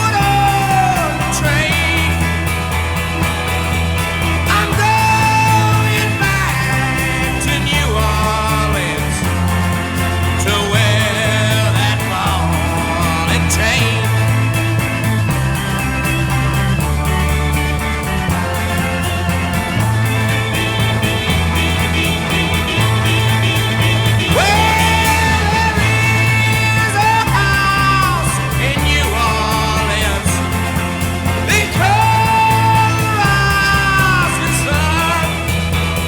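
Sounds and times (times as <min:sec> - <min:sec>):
man singing wailing notes: 0:00.0 - 0:02.7, 0:04.4 - 0:09.4, 0:10.3 - 0:14.6, 0:20.4 - 0:35.7
rock band backing: 0:00.0 - 0:36.0.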